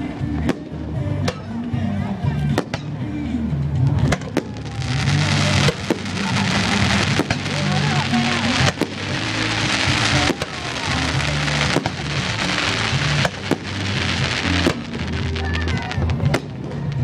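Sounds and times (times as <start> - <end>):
music: 0.0 - 17.0
fireworks crackling: 3.8 - 17.0
fireworks bangs: 4.0 - 17.0.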